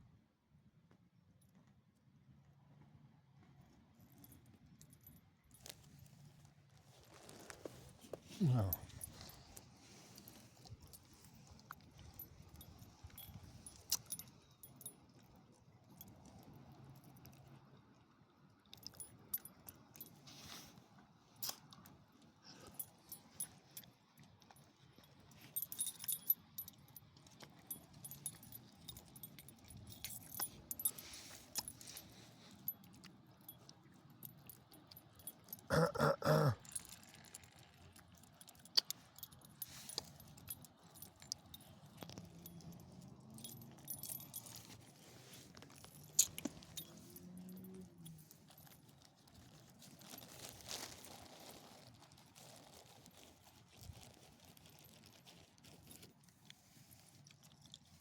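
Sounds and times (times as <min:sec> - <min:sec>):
metal collar tags jingling: 0:07.7 - 0:15.0, 0:25.1 - 0:50.6
dog coughing: 0:35.7 - 0:36.7.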